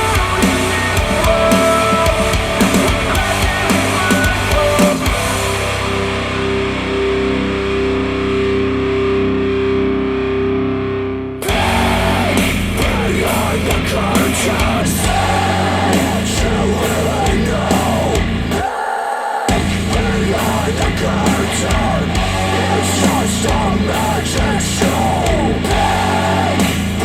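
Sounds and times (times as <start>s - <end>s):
rock music with electric guitar: 0.0s - 18.7s, 19.5s - 27.0s.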